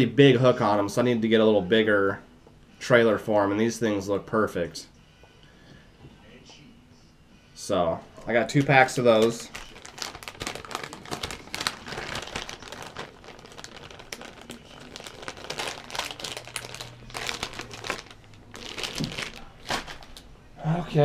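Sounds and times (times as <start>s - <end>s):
plastic packaging crinkling: 8.3s - 20.3s.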